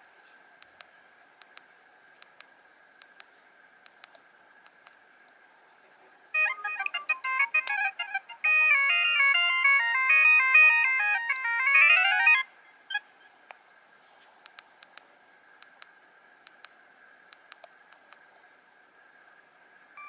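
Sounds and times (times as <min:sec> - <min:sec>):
mobile phone ringtone melody: 0:06.4 - 0:12.5.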